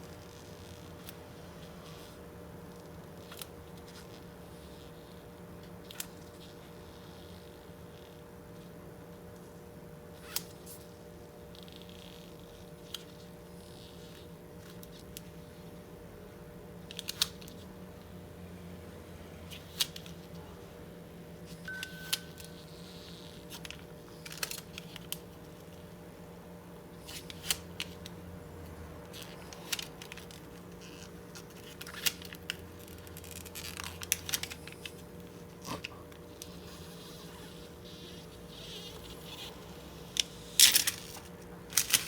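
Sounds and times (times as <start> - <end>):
film peeling with crackles: 22.4 - 25.8, 27.0 - 28.1, 29.0 - 42.0.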